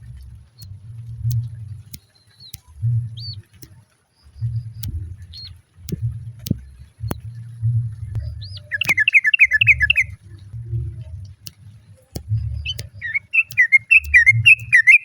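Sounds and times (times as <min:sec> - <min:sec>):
sharp clicks: 0:00.1 - 0:15.0
high bird chirps: 0:08.3 - 0:10.2, 0:12.3 - 0:15.0
bird cooing: 0:08.3 - 0:11.0, 0:12.5 - 0:15.0.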